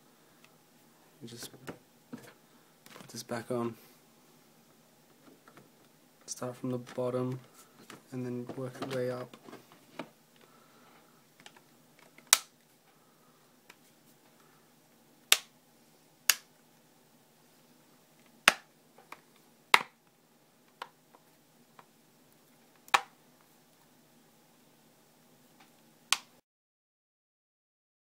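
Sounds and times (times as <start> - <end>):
plastic clips snapping: 11.4 - 12.5.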